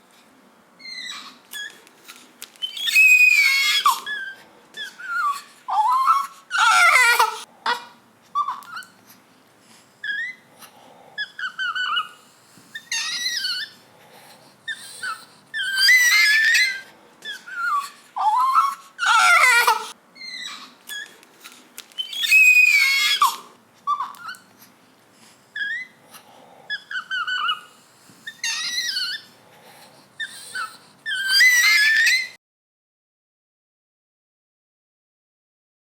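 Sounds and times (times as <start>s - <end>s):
baby crying: 2.8s - 8.9s, 14.7s - 21.0s, 22.1s - 24.5s, 25.6s - 29.3s, 30.2s - 32.4s.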